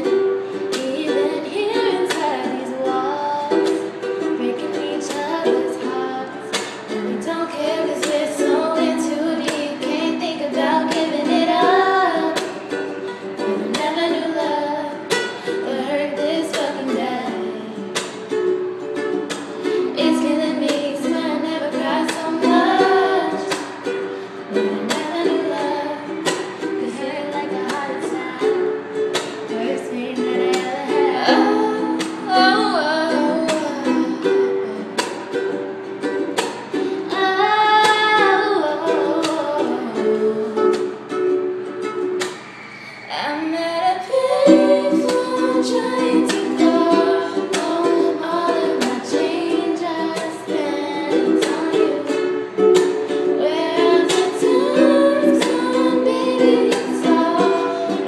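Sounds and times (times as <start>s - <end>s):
strummed acoustic string instrument: 0.0s - 58.0s
women singing a pop song: 0.7s - 12.6s, 13.5s - 17.9s, 19.9s - 23.8s, 24.5s - 35.0s, 37.1s - 40.9s, 43.1s - 58.0s.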